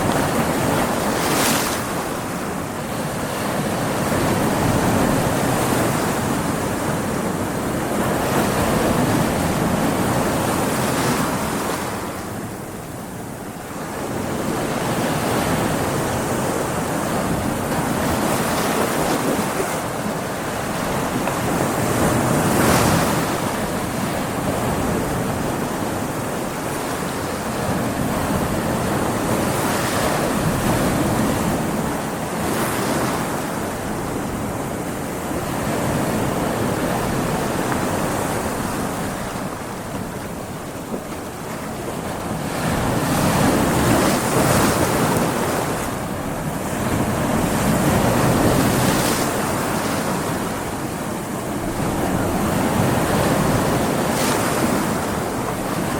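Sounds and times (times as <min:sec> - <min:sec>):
ocean waves breaking on rocks: 0:00.0 - 0:55.9.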